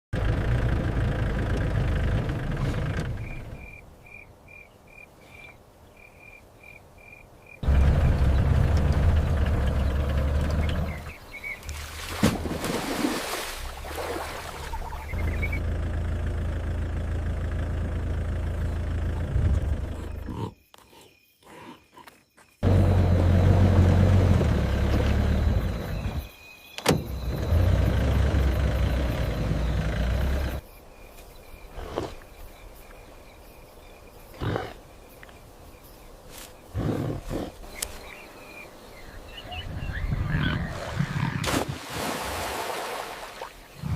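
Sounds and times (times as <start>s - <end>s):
vehicle engine low rumble: 0.1s - 3.8s, 7.6s - 11.6s, 14.8s - 20.3s, 22.6s - 30.6s
leopard grunting: 19.3s - 22.2s, 31.7s - 32.3s, 34.3s - 35.0s, 36.7s - 37.7s.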